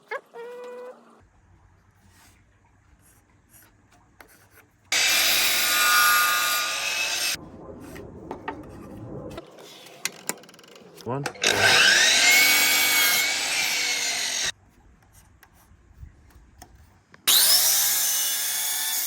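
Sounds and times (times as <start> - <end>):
saw cutting through wood: 4.9 - 7.4, 11.4 - 14.5, 17.3 - 19.0
wood rubbing: 9.6 - 14.5.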